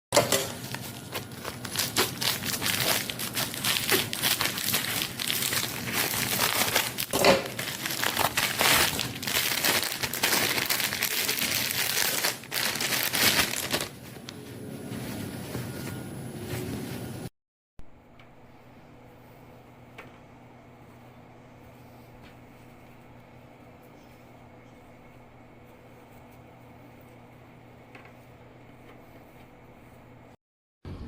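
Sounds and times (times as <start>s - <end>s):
packaging crinkling and rustling: 0.2s - 14.4s
packaging crackle: 0.4s - 14.3s.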